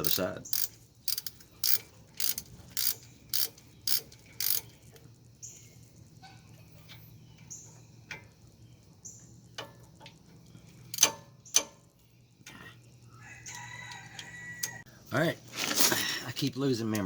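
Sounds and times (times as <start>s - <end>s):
ratchet wrench clicking: 0.0s - 4.8s, 10.9s - 11.8s
tools tapping on metal: 10.9s - 11.8s.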